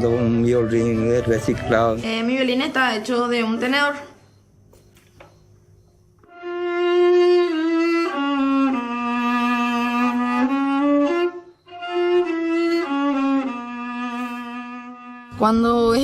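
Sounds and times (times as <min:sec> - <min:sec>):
violin bowed melody: 0:00.0 - 0:02.2, 0:06.2 - 0:16.0.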